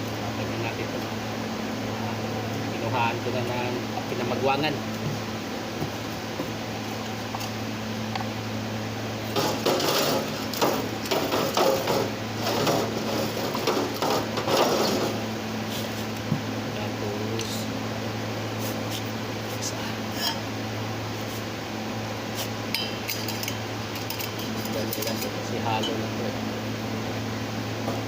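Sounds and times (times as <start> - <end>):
metal tools clinking and scraping: 22.7 - 26.0.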